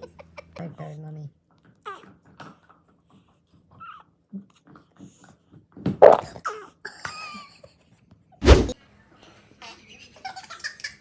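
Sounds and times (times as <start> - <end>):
baby farting: 6.0 - 6.4.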